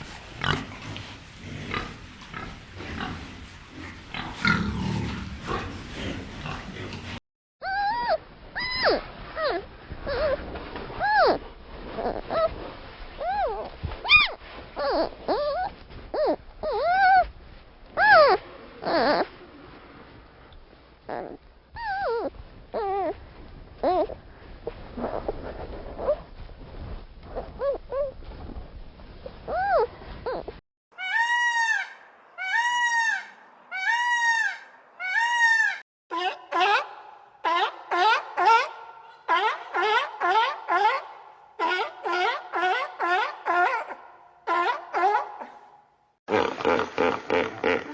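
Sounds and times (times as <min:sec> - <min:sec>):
animal whining cries: 0:07.6 - 0:10.4, 0:21.1 - 0:23.2.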